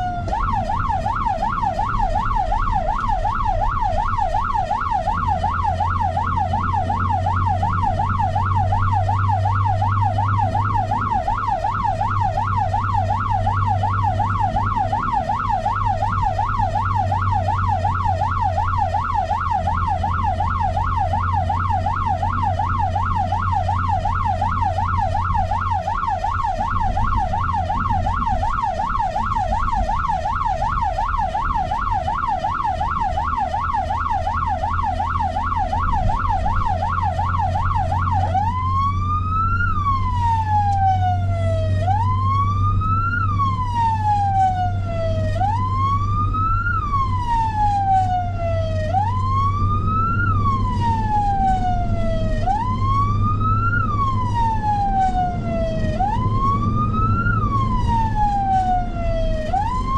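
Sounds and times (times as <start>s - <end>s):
emergency vehicle siren: 0.0s - 59.9s
low vehicle rumble: 0.0s - 59.9s.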